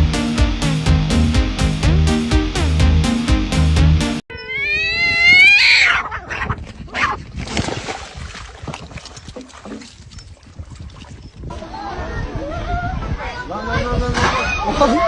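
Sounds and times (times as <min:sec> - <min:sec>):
music: 0:00.0 - 0:04.2.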